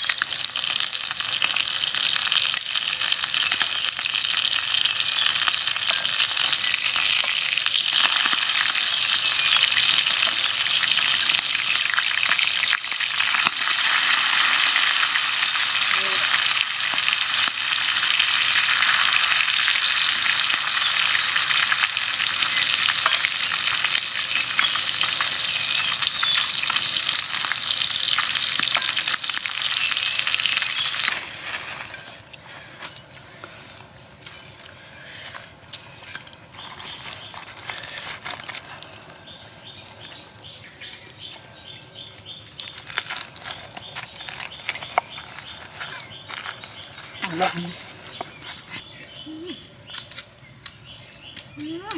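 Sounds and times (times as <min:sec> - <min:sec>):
frying in hot oil sizzle: 0:00.0 - 0:32.1
oil pops and crackles: 0:00.0 - 0:39.2, 0:42.2 - 0:48.4, 0:49.9 - 0:50.8.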